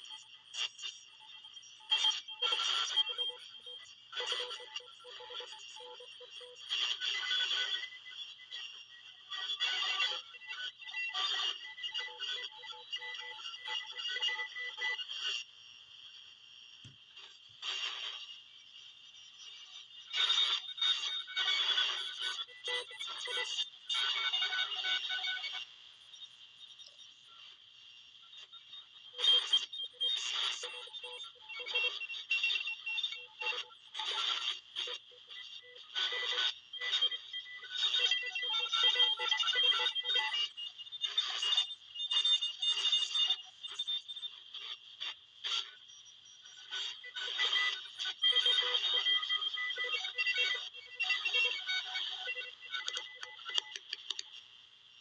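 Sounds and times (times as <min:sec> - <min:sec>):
shortwave radio hiss bursts: 0:15.0 - 0:20.7.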